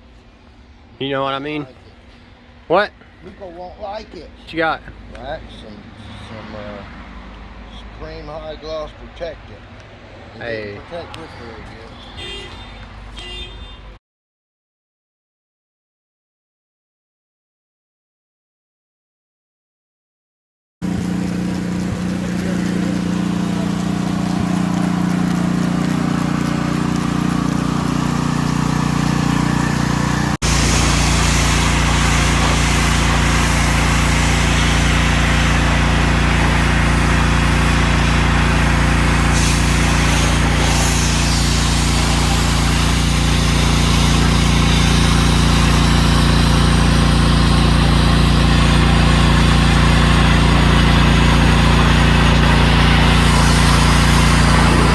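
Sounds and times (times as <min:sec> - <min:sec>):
pressure washer spray hissing: 0:20.8 - 0:54.9.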